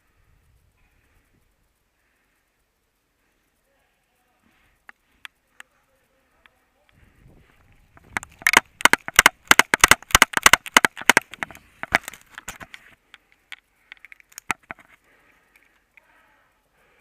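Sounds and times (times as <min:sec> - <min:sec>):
airsoft guns firing: 0:08.4 - 0:11.5.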